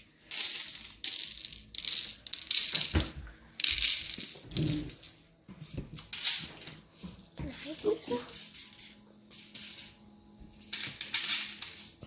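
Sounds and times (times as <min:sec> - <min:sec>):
small stones rattling: 0:00.2 - 0:05.2.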